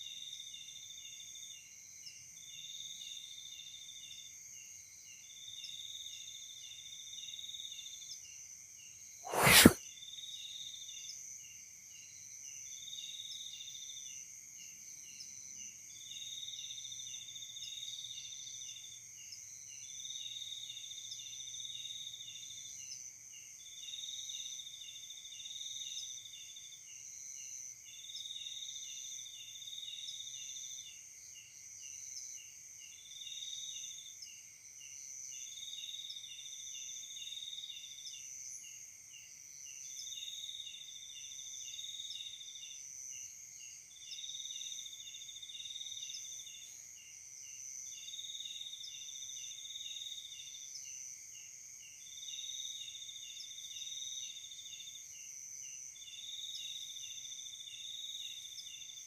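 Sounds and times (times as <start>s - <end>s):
rapid pulsing cricket chirp: 21.7s - 59.0s.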